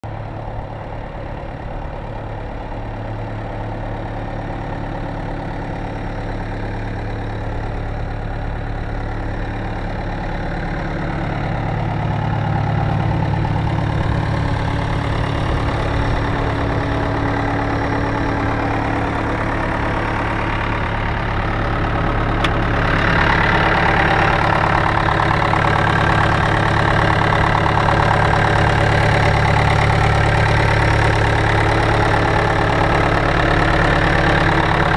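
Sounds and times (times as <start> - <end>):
diesel engine idling: 0.0 - 34.9.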